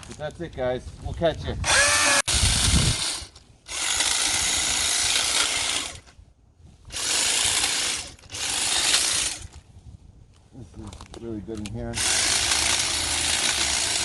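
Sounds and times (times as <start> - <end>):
hedge trimmer cutting brush: 1.6 - 6.0, 6.9 - 9.5, 11.9 - 14.0.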